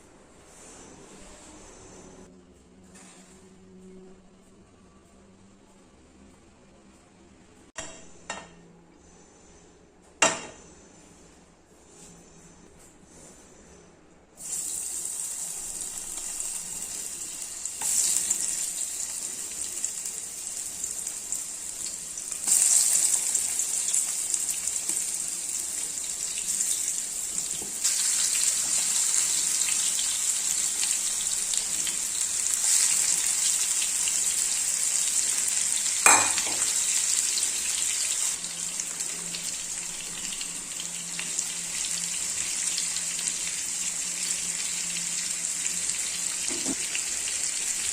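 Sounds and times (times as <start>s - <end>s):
food sizzling in hot oil: 14.4s - 47.9s.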